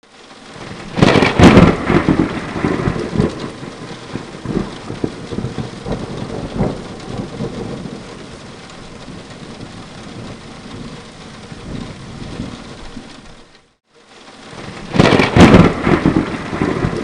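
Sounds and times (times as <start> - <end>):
steady rain hissing: 0.0 - 17.0
thunder crack and rumble: 0.4 - 13.6, 14.4 - 17.0.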